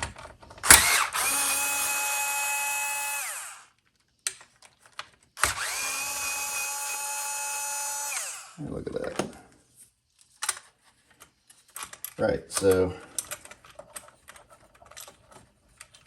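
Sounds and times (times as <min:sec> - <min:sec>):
power drill whirring: 0:00.6 - 0:03.7, 0:05.4 - 0:08.6.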